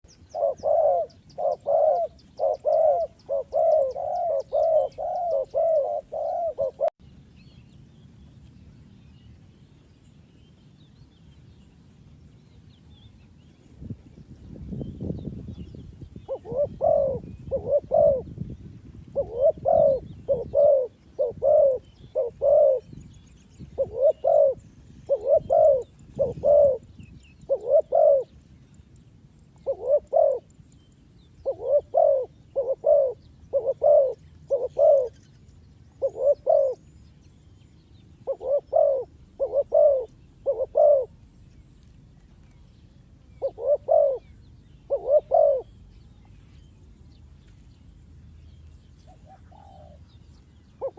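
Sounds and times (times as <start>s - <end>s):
dove cooing: 0.1s - 7.0s, 16.2s - 18.5s, 19.1s - 23.0s, 23.6s - 28.4s, 29.6s - 30.6s, 31.4s - 35.2s, 35.9s - 37.0s, 38.2s - 41.3s, 43.4s - 45.8s, 49.0s - 50.2s.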